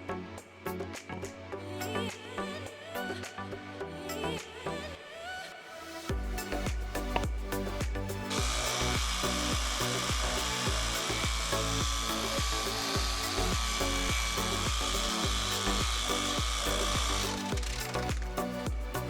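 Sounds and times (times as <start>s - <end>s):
background music with beat: 0.0s - 5.3s, 5.9s - 19.0s
power tool whining: 8.4s - 18.4s.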